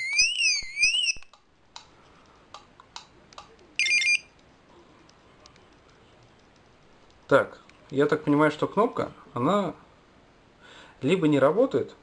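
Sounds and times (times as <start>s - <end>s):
warbling car alarm beep: 3.8s - 4.3s.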